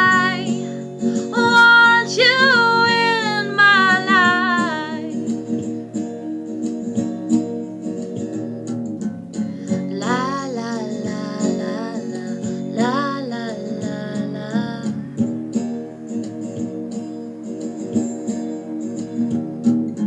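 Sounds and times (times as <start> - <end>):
woman singing: 0.0 - 5.6, 9.5 - 15.3
acoustic guitar strumming: 0.0 - 20.0.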